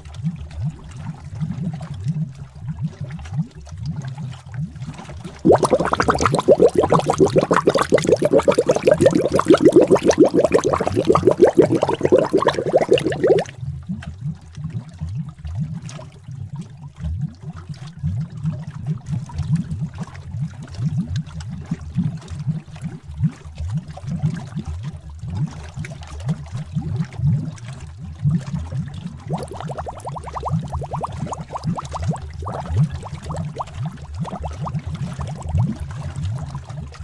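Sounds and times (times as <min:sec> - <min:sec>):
higher bright bubbling: 0:05.4 - 0:13.6, 0:29.2 - 0:35.6
thick liquid bubbling: 0:05.4 - 0:13.7, 0:26.9 - 0:37.0.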